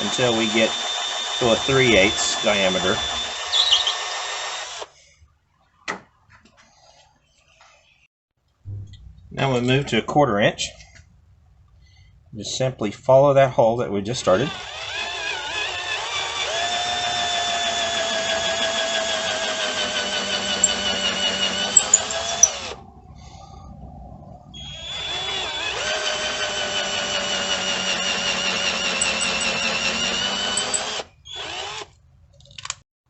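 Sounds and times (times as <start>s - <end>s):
power drill boring into wood: 0.0s - 4.9s, 14.3s - 22.8s, 24.6s - 32.0s.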